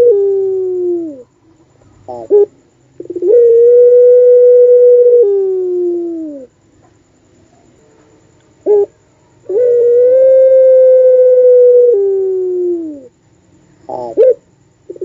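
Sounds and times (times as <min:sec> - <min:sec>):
dove calling: 0:00.0 - 0:06.5, 0:08.6 - 0:13.1, 0:13.8 - 0:15.0.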